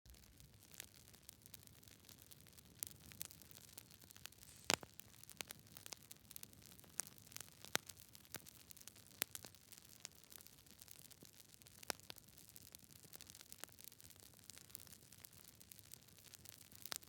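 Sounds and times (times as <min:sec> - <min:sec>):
faint steady hiss: 0:00.1 - 0:06.9
wood fire crackling: 0:00.1 - 0:17.0.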